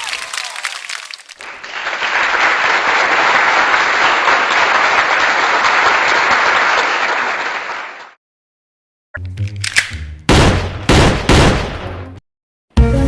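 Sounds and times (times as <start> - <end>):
crowd applause: 0.0 - 8.2.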